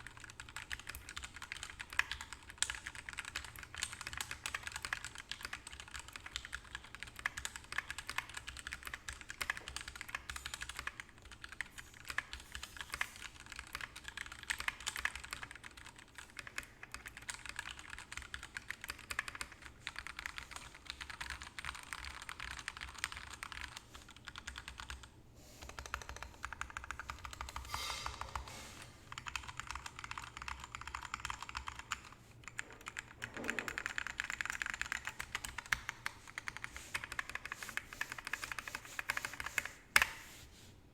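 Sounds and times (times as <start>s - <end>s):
mechanical keyboard typing: 0.0s - 28.4s, 29.1s - 40.1s.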